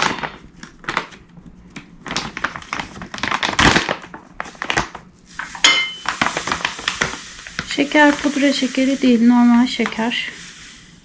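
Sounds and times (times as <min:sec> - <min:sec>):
sugar pouring into a bowl: 0:05.3 - 0:11.0
glass clinking against bowl: 0:05.7 - 0:06.0.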